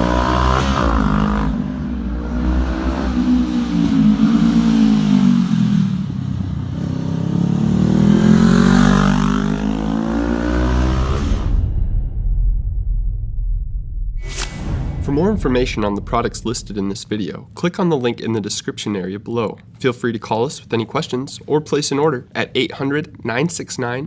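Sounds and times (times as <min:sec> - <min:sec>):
motorcycle engine revving: 0:00.0 - 0:11.5.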